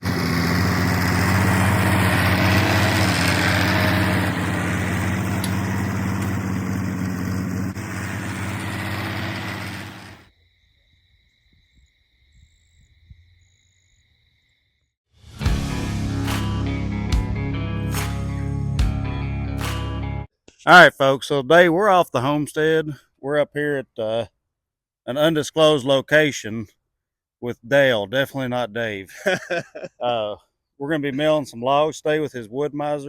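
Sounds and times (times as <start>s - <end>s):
sawmill engine running: 0.0s - 10.3s.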